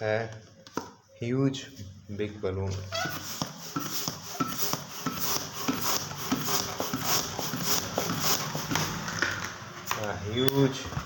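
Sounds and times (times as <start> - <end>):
balloon rubber rubbing and clicking: 2.8 - 10.0
hand pump strokes: 2.9 - 9.4.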